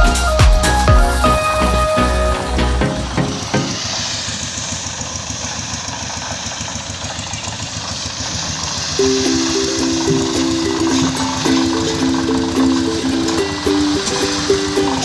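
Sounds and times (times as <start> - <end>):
music with a beat: 0.0 - 3.8
music with held notes: 0.0 - 3.9, 9.0 - 15.0
steady hissing noise: 8.8 - 15.0.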